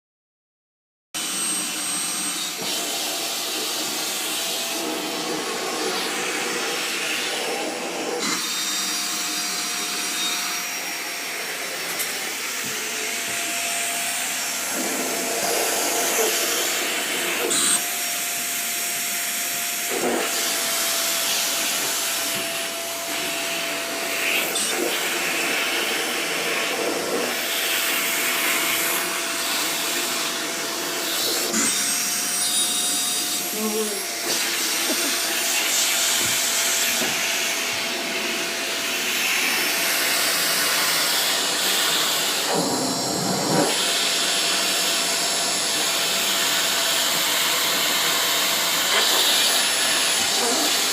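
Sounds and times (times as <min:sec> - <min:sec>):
vacuum cleaner running: 0:01.2 - 0:50.9.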